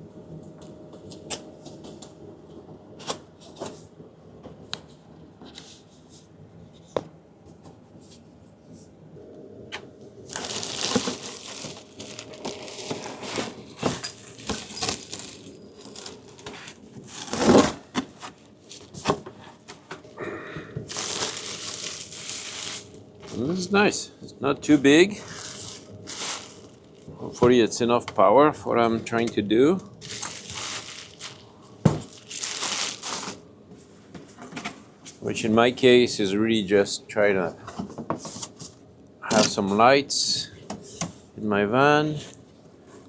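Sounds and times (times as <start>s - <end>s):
packaging knocks and clicks: 10.3s - 23.5s, 25.3s - 27.6s, 30.0s - 33.4s
packing material crinkling: 10.3s - 24.0s, 24.6s - 27.4s, 29.9s - 33.4s.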